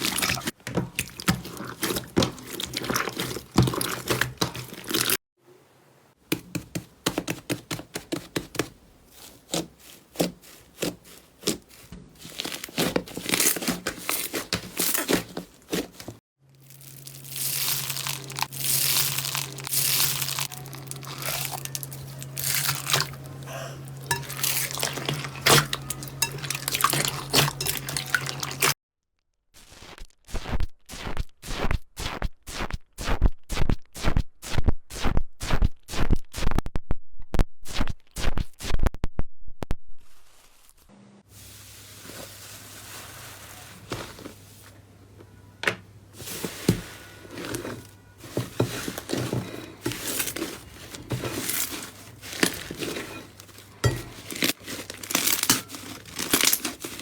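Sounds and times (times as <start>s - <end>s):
low steady hum: 16.6s - 28.8s.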